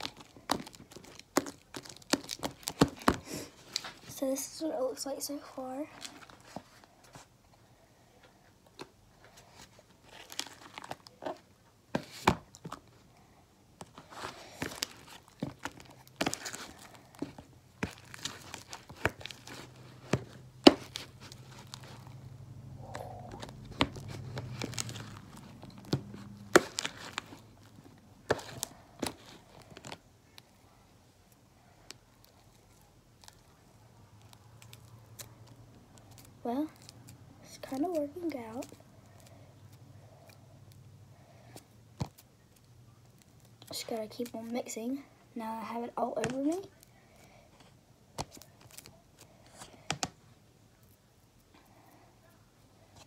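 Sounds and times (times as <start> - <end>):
slime squelching and crackling: 0.0 - 6.6, 13.8 - 30.6, 31.3 - 44.7.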